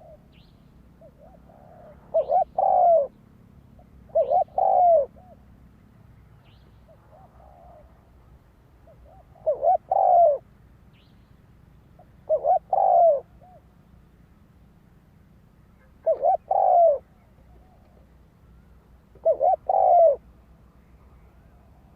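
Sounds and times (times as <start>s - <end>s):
dove cooing: 0.0s - 3.2s, 3.8s - 5.6s, 6.9s - 10.5s, 12.0s - 13.7s, 15.8s - 18.2s, 19.0s - 20.3s
distant dove coo: 0.0s - 5.6s, 6.4s - 10.5s, 12.0s - 13.8s, 15.8s - 21.9s.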